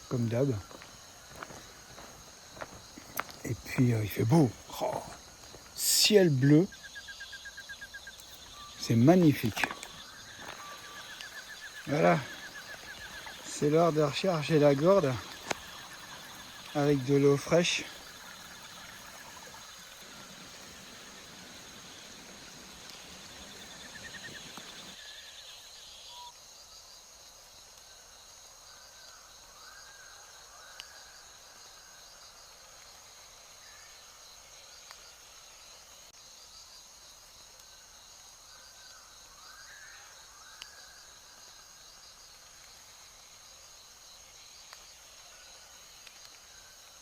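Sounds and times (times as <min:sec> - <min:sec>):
insects buzzing: 0:00.0 - 0:47.0
faint clicks: 0:09.4 - 0:13.6, 0:15.2 - 0:16.8.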